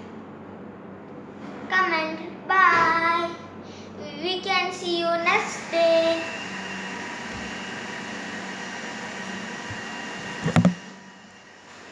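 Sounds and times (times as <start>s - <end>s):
motor whirring hum: 5.5s - 11.1s.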